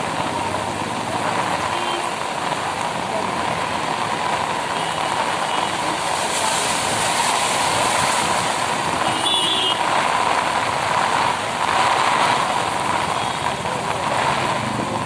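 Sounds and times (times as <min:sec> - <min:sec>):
traffic in heavy rain: 0:00.0 - 0:15.0.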